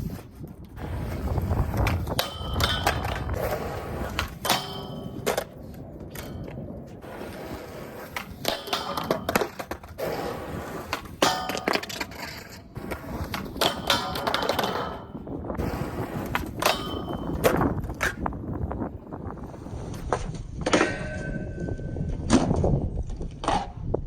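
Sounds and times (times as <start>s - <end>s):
skateboard rolling noise: 0.0s - 24.0s
skateboard knocking on ground: 0.1s - 18.8s.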